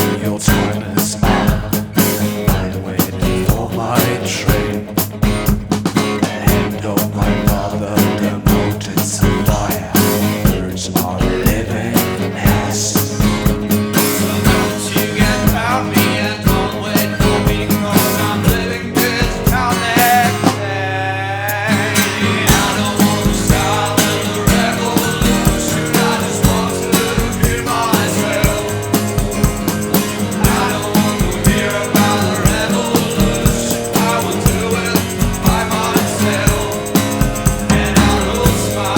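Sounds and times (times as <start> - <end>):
drum kit beat: 0.0 - 20.8, 21.5 - 38.9
rock guitar: 0.0 - 38.9
sweeping effect: 20.8 - 38.9.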